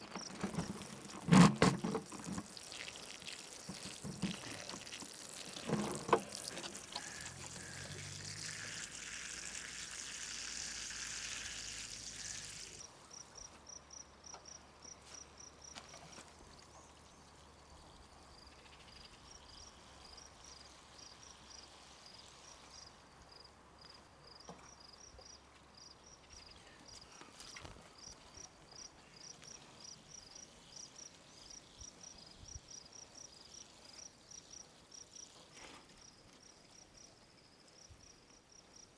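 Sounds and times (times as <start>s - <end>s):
insects chirping: 0.0s - 16.2s, 16.8s - 35.4s
water running: 0.4s - 12.8s.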